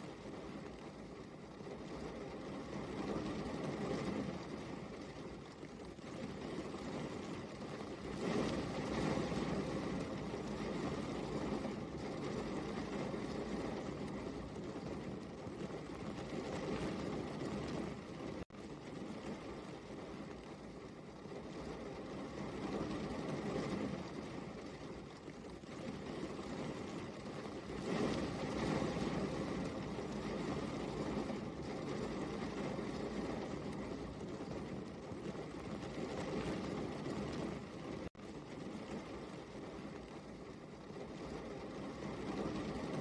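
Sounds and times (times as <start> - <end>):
steady rain: 0.0 - 43.0.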